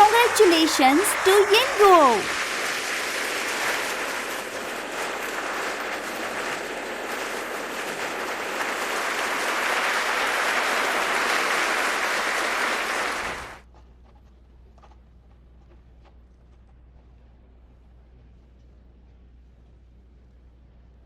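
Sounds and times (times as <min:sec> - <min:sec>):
audience applauding: 0:00.0 - 0:02.4, 0:08.1 - 0:13.6.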